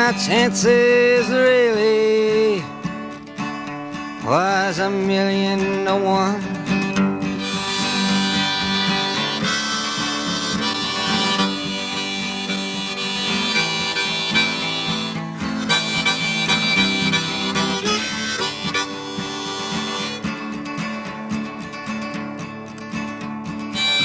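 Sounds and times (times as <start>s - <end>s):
strummed acoustic guitar: 0.0s - 24.0s
harmonica solo: 6.5s - 21.2s, 23.6s - 24.0s.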